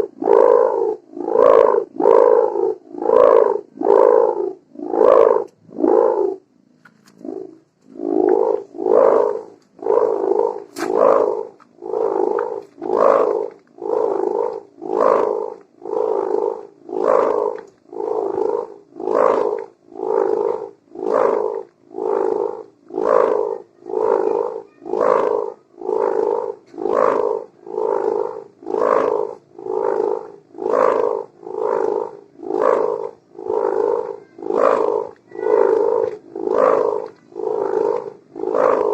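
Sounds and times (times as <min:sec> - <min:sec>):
kite hummer buzzing drone: 0:32.6 - 0:38.9.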